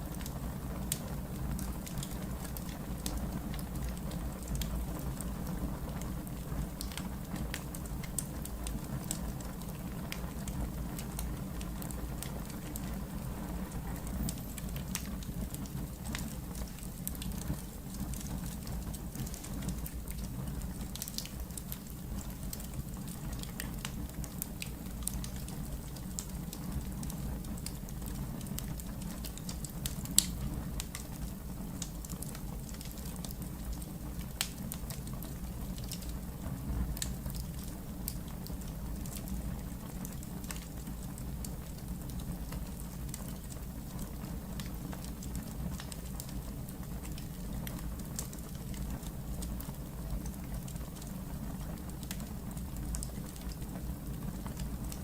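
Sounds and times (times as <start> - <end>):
fire crackling and popping: 0.0 - 55.0
fire flames rumbling: 0.0 - 55.0.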